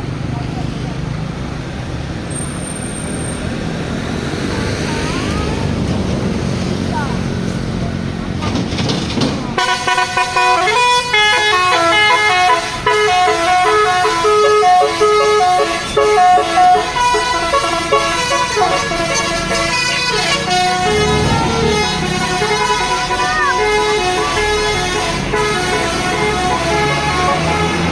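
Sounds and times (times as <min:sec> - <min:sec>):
bus musical horn playing a tune: 0:09.6 - 0:27.9.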